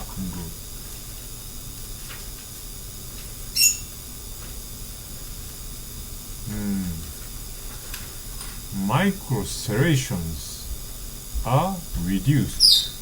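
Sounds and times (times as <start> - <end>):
low hum and hiss: 0.0 - 13.0
man humming: 6.4 - 7.2, 8.8 - 10.7.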